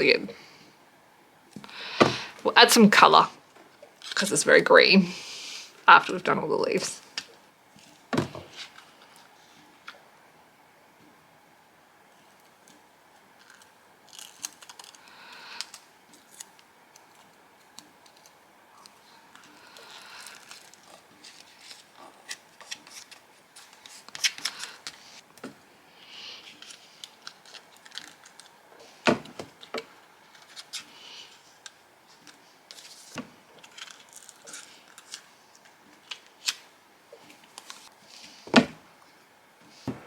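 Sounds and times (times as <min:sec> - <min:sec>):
paper rustling and crinkling: 0:13.4 - 0:25.3, 0:26.4 - 0:36.6, 0:37.2 - 0:38.5.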